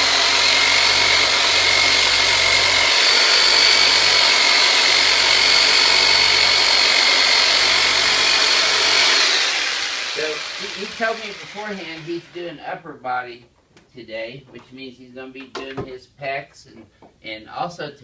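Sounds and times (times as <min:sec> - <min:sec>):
electric massage tool motor whine: 0:00.0 - 0:12.2.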